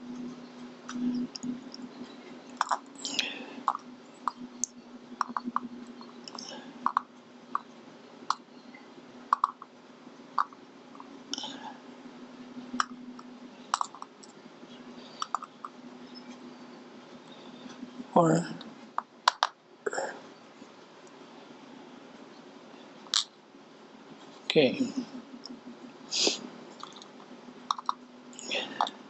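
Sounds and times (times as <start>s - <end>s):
low hum: 0.0s - 8.9s, 24.5s - 29.0s.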